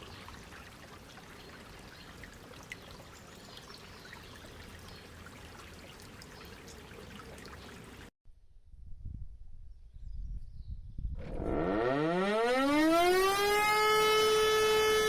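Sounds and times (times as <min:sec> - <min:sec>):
running water rushing: 0:00.0 - 0:08.1.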